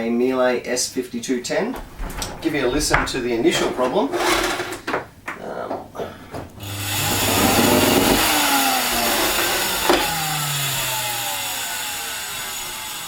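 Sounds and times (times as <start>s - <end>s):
vacuum cleaner motor whining: 6.6s - 13.0s.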